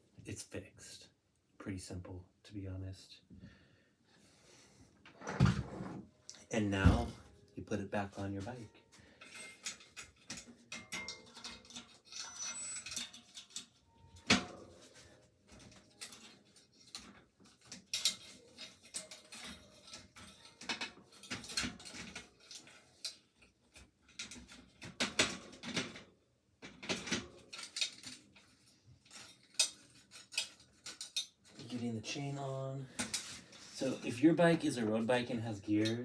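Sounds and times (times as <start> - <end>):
bicycle wheel and chain clanking: 9.1 - 25.6.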